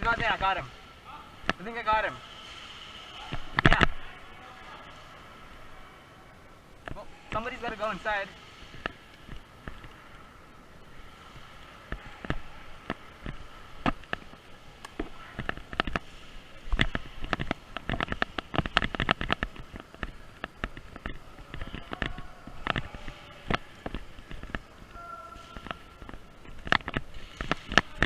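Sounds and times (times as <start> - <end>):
footsteps: 6.8 - 28.0.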